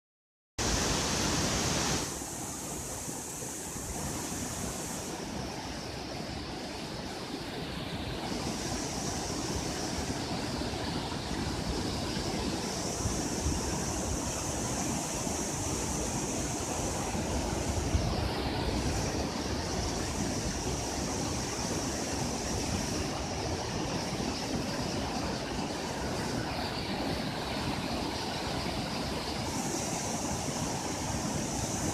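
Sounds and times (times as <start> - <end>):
heavy rain hissing: 0.6 - 5.6, 11.6 - 27.1.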